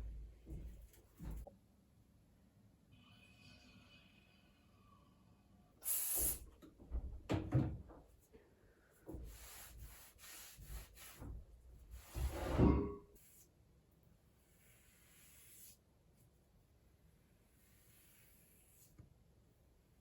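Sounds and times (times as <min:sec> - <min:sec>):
knocks and bumps: 0:06.7 - 0:08.2
rubbing or scrubbing: 0:09.2 - 0:12.7.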